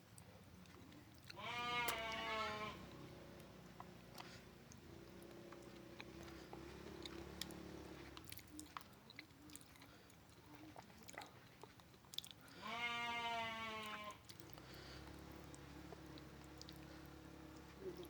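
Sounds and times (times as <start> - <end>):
chewing with mouth clicks: 0.0 - 13.2, 13.8 - 18.0
long animal call: 1.4 - 3.1.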